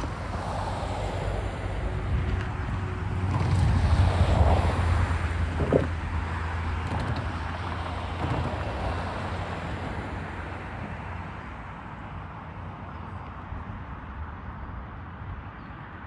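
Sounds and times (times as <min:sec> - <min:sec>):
train rumbling past: 0:00.0 - 0:06.7.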